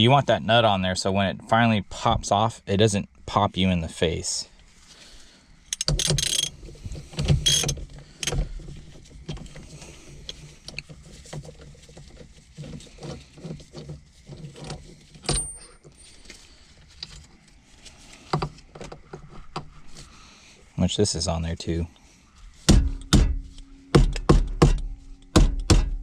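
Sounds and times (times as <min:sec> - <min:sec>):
steering wheel clunks and rattles: 0:05.8 - 0:09.7.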